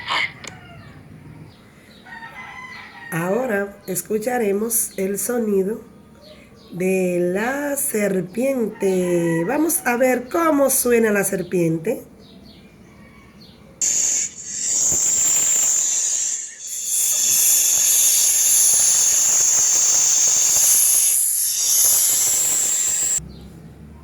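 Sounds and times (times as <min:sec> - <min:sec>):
snake hissing: 0:13.8 - 0:23.2.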